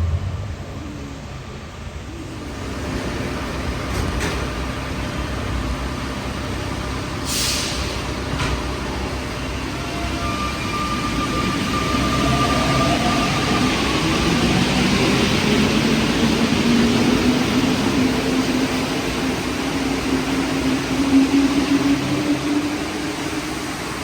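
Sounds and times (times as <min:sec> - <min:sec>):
train wet running noise: 0:00.0 - 0:24.0
air hiss burst: 0:07.3 - 0:08.0.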